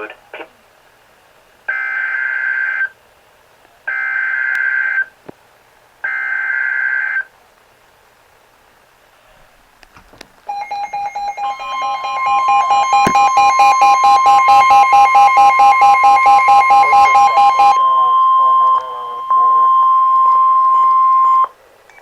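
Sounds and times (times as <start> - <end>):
screeching digital data tones: 10.5 - 21.5
two-pitch attention tone: 10.5 - 21.5.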